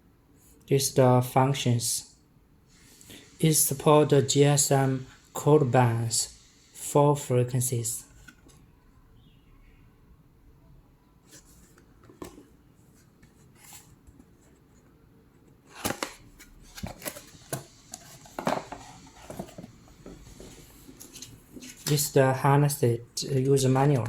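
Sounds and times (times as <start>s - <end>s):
packaging being handled: 15.7s - 22.1s.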